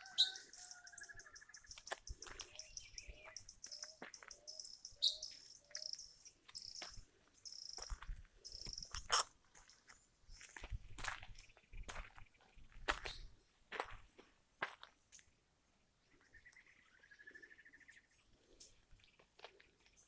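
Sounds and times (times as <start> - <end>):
bird trill: 0.0 - 9.2
birds chirping: 0.0 - 13.4, 15.8 - 20.0
crunching footsteps: 1.7 - 4.6, 6.4 - 15.3, 18.9 - 20.0.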